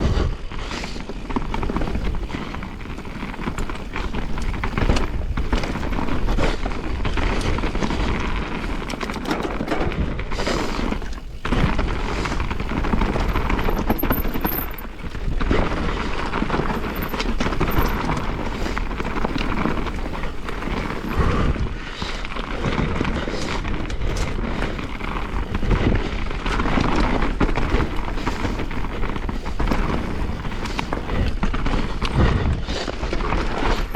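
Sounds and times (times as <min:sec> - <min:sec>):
bike knocking and rattling: 0:00.0 - 0:33.9
tyre noise on trail: 0:00.0 - 0:33.9
wind rush: 0:23.2 - 0:33.9.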